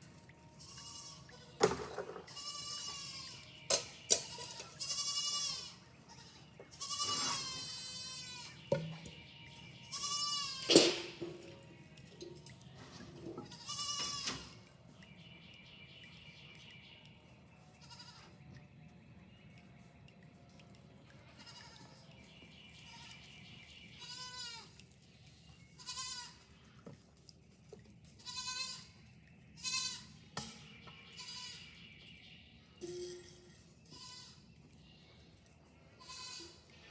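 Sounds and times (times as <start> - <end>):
goats bleating: 0.6 - 1.6, 2.3 - 3.5, 4.2 - 8.6, 9.9 - 11.2, 13.4 - 14.6, 17.8 - 18.3, 21.3 - 21.9, 24.0 - 24.7, 25.8 - 26.4, 28.2 - 28.9, 29.6 - 30.1, 31.2 - 31.6, 36.0 - 36.7.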